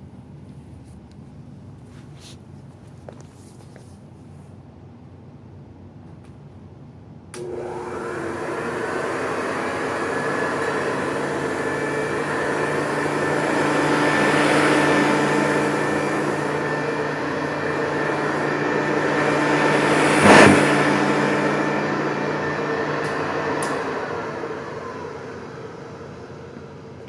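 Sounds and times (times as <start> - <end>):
vacuum cleaner motor running: 7.4 - 26.8.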